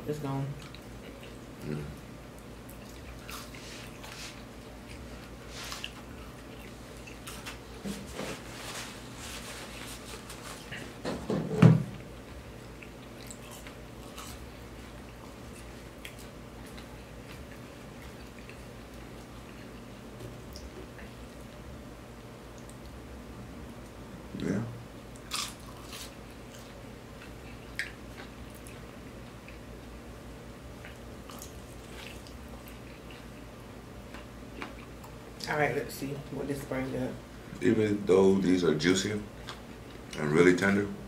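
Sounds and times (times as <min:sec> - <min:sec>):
biting and chewing: 0:00.6 - 0:07.6, 0:12.0 - 0:21.5, 0:25.1 - 0:29.8, 0:30.7 - 0:35.2.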